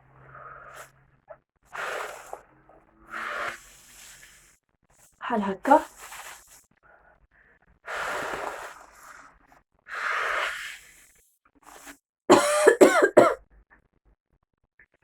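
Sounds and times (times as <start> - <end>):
woman coughing: 12.3 - 13.4.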